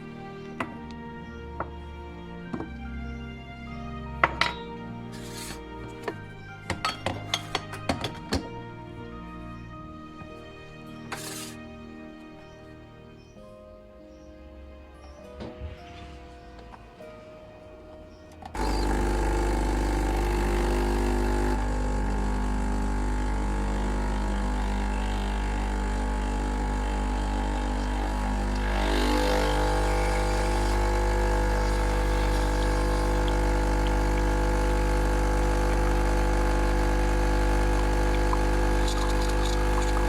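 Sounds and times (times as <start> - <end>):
background music: 0.0 - 35.2
espresso machine pump humming: 18.5 - 40.0.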